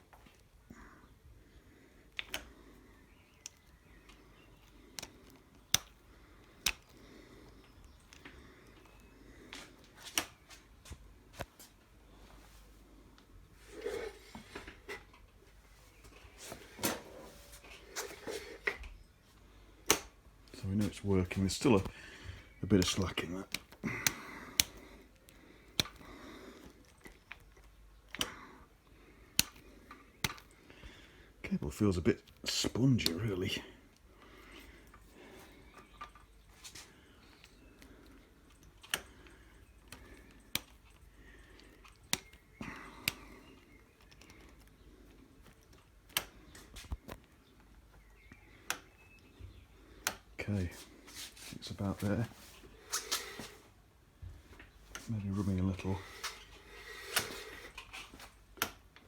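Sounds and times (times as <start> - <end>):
handling and rustling: 3.4 - 19.5, 31.6 - 59.0.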